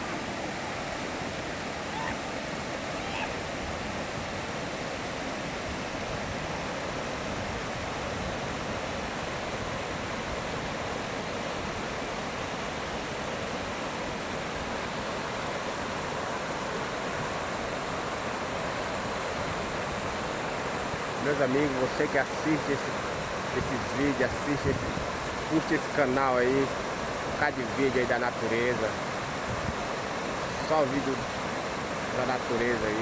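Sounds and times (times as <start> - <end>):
waterfall rushing: 0.0 - 33.0.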